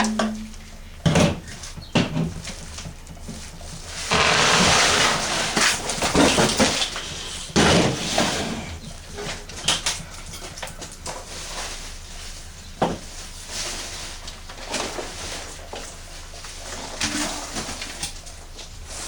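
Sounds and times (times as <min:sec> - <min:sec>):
packaging scraping and rustling: 0:03.9 - 0:07.3.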